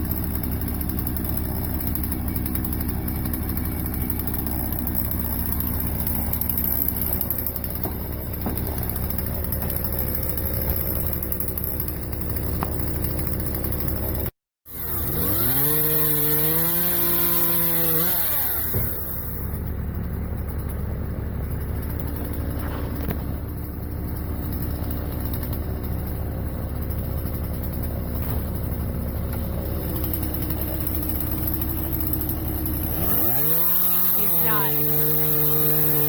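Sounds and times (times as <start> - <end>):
chainsaw revving: 0.0 - 19.6, 24.0 - 36.0.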